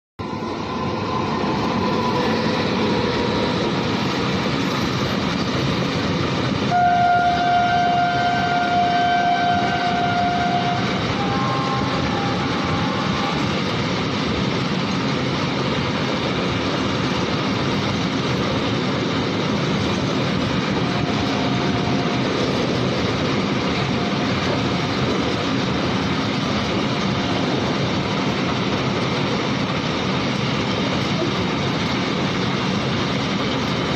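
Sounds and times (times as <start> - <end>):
train rumbling past: 0.2 - 33.9
train horn: 6.7 - 13.5, 20.7 - 22.8, 23.8 - 25.0.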